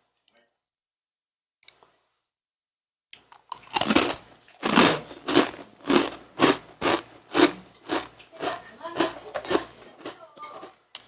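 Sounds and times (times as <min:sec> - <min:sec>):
person chewing crunchy food: 0:03.5 - 0:10.7.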